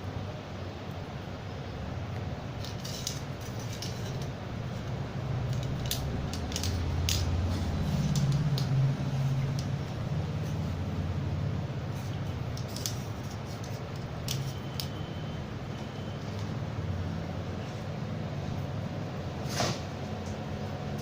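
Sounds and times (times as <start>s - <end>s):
kittens scratching and clicking: 2.1s - 15.1s.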